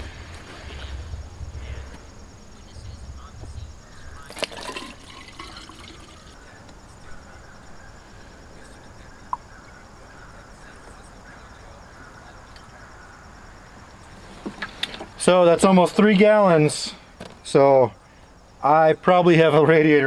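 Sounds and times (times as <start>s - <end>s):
liquid pouring from jug: 4.2s - 6.5s.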